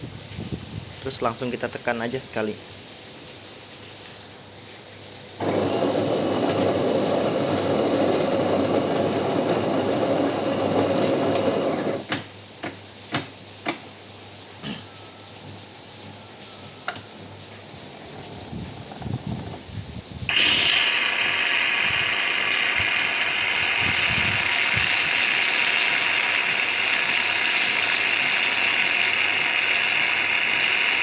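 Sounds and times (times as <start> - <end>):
coffee machine motor whining: 5.4 - 12.1, 20.3 - 31.0.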